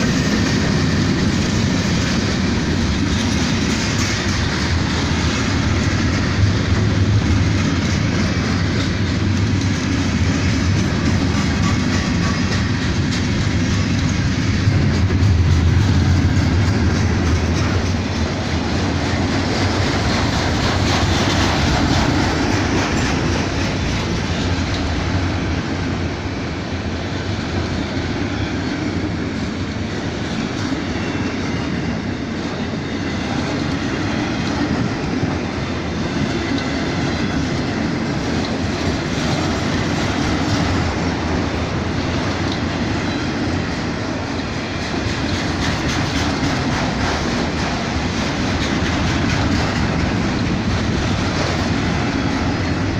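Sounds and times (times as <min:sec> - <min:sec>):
freight train wheels clattering: 0:00.0 - 0:52.9
train rumble: 0:00.0 - 0:52.9.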